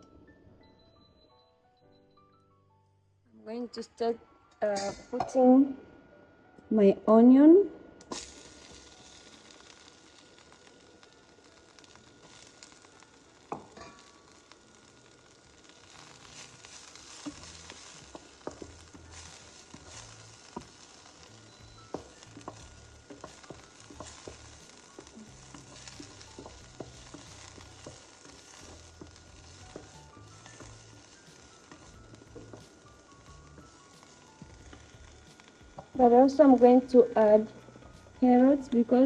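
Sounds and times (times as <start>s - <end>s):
onions sizzling in oil: 8.0s - 39.0s.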